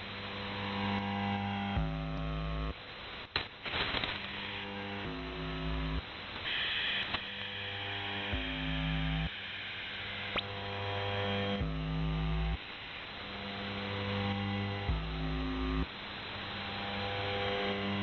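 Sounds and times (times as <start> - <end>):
radio hum and hiss: 0.0 - 18.0
radio signal buzzes: 0.0 - 18.0.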